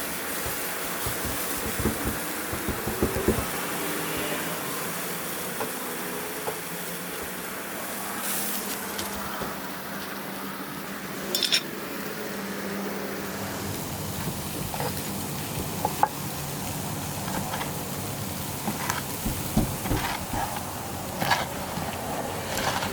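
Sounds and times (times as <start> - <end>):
meat sizzling on charcoal grill: 0.0 - 22.9.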